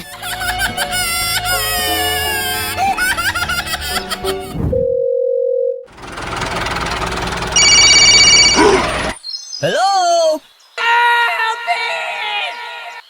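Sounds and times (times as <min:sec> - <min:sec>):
background music: 0:00.0 - 0:04.8
steady beep: 0:07.6 - 0:08.6.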